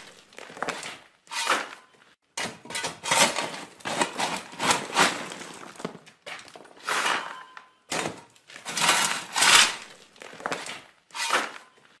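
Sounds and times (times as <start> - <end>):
digging tool scraping soil: 0.0 - 1.8, 8.7 - 11.7.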